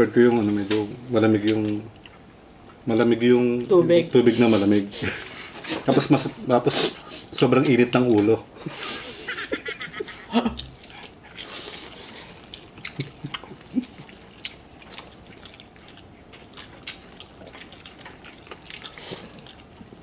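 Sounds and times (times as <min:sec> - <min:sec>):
chewing food: 0:00.2 - 0:03.8, 0:10.5 - 0:20.0
wet mouth clicks: 0:10.5 - 0:11.5.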